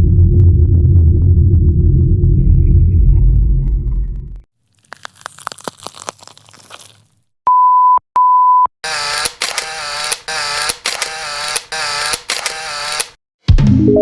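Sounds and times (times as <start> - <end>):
harsh buzzing sound effect: 8.8 - 13.2.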